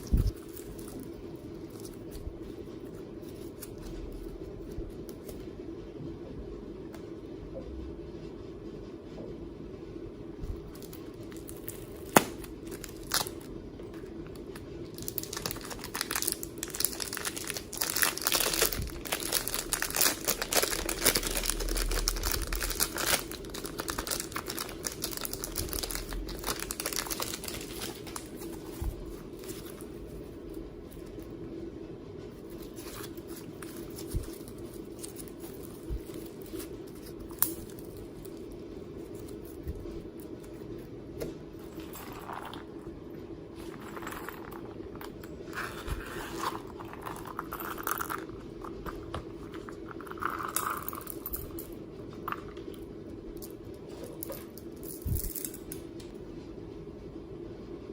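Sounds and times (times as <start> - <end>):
low hum: 0.0 - 57.9
slime crackling and popping: 11.6 - 13.4.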